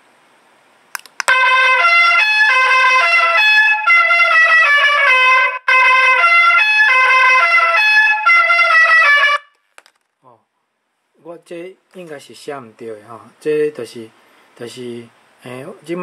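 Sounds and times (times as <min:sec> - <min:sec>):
trumpet-like melody over loudspeaker: 0:01.3 - 0:09.4.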